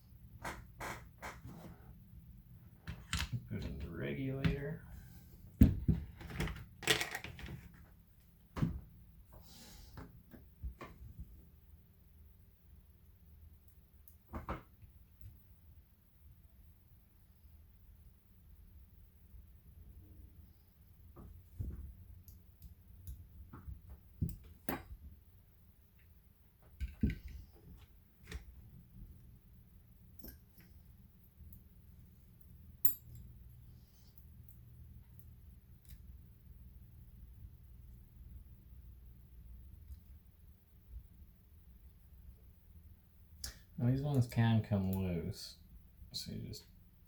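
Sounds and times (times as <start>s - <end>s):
plastic parts clicking and knocking: 5.6s - 7.7s.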